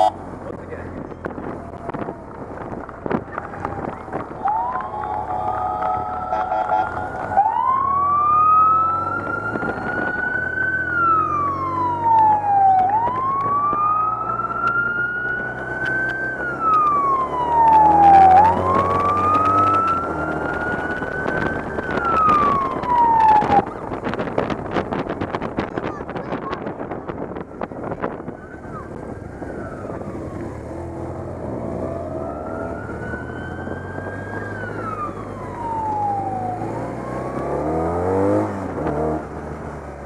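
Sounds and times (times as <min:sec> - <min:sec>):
engines running: 0:00.0 - 0:40.0
police siren wailing: 0:03.4 - 0:24.2, 0:27.8 - 0:38.5.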